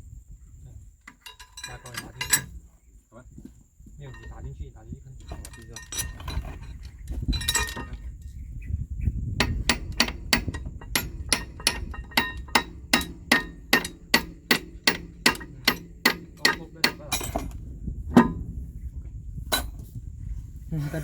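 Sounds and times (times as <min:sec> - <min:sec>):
hammer striking metal: 0:09.4 - 0:17.6, 0:18.2 - 0:18.5.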